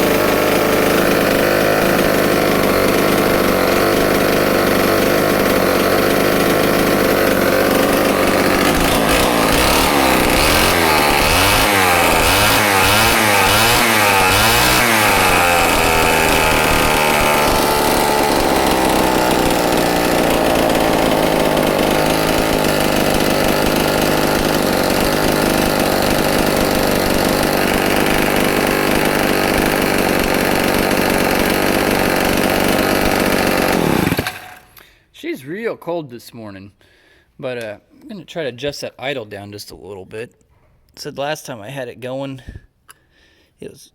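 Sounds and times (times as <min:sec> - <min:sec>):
chainsaw revving: 0:00.0 - 0:34.9.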